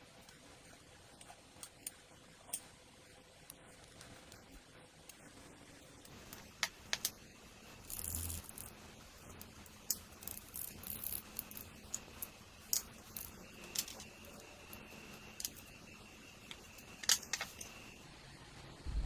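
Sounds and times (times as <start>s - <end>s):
small metal parts clicking: 7.8s - 8.7s, 9.4s - 15.7s.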